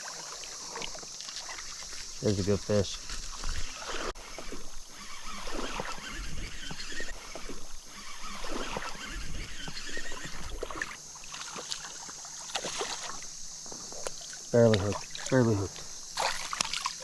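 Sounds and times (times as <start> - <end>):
water splashing and sloshing: 0.0 - 17.0.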